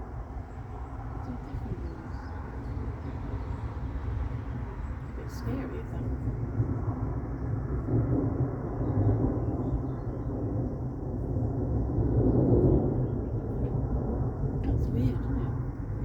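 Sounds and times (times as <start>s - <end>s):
distant thunder rumbling: 0.0s - 16.0s.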